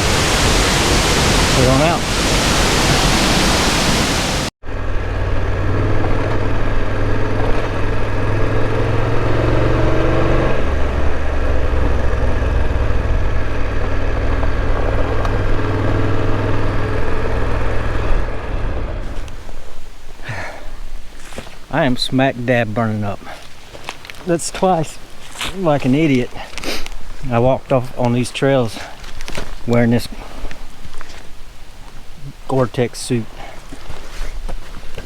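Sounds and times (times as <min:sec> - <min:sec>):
rushing waterfall: 0:00.0 - 0:04.5
vehicle engine humming: 0:04.6 - 0:20.4.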